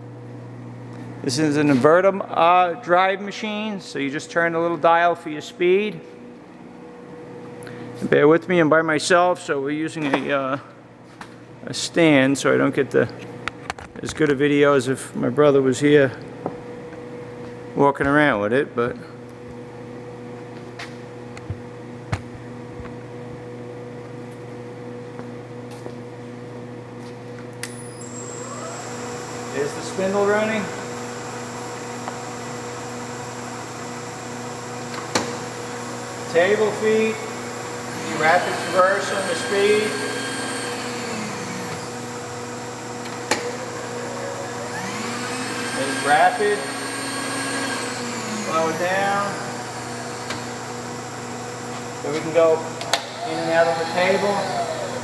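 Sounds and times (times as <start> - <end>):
milling machine humming: 27.6 - 55.0
power feed motor whine: 27.6 - 55.0.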